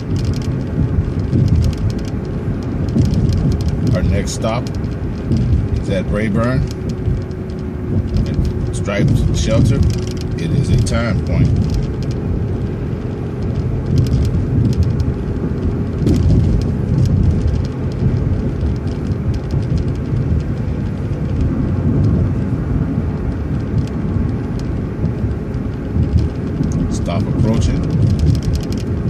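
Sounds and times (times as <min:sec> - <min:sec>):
bus engine and road rumble: 0:00.0 - 0:29.0
light clicks and rattles: 0:00.0 - 0:29.0.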